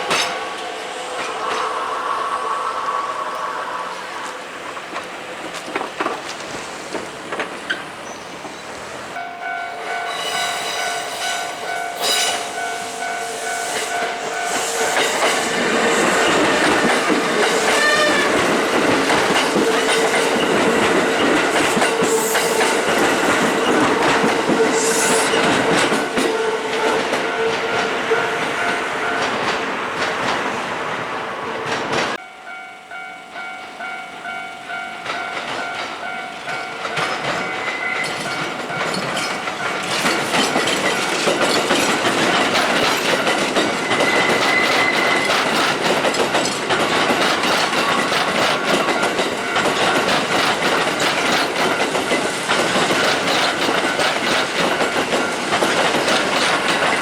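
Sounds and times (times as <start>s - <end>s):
steady tone from train: 0.0s - 57.0s
train rumble and wheel clatter: 0.0s - 57.0s
level-crossing warning bell: 9.1s - 29.8s, 32.2s - 57.0s.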